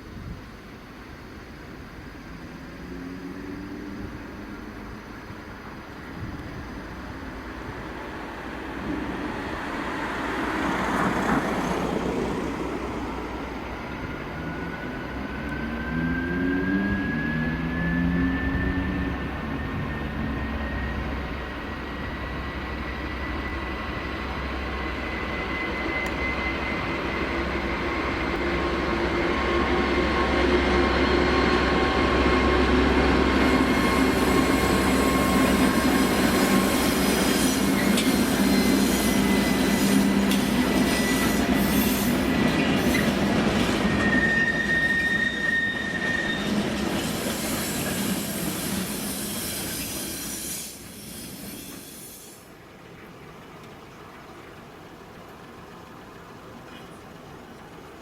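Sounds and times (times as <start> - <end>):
train clatter over rails: 5.8 - 14.9, 19.1 - 58.0
train wheels squealing: 9.4 - 52.7.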